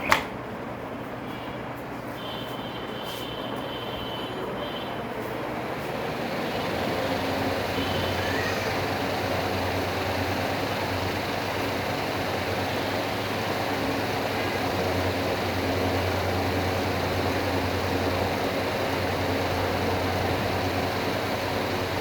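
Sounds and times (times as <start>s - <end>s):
electric fan running: 0.0s - 22.0s.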